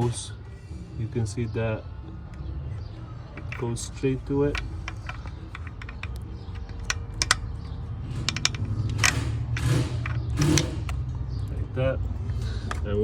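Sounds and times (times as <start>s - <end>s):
light metal clicks and taps: 4.5s - 7.5s.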